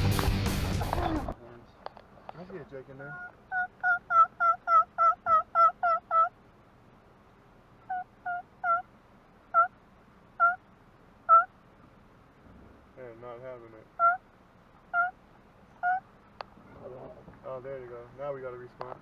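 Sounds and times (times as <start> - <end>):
turkey yelping: 3.0 - 6.4, 7.8 - 8.9, 9.5 - 11.6, 13.8 - 16.1.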